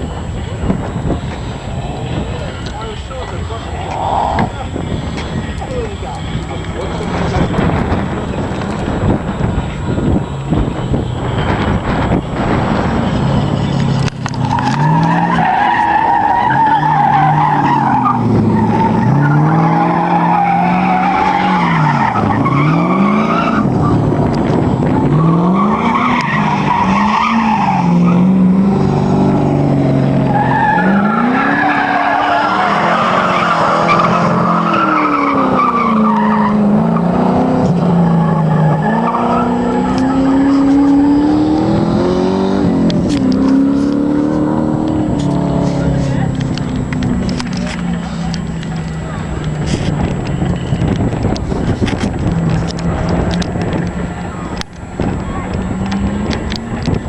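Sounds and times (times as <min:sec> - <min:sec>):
car engine revving: 0:00.0 - 0:57.0
tyres squealing: 0:13.6 - 0:24.0, 0:29.7 - 0:41.7.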